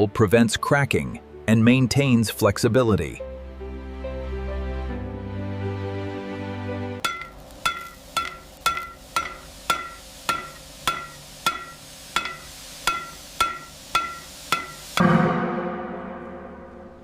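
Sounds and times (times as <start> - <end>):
soft music: 0.0 - 17.0
sharp ringing knocks: 7.0 - 15.5.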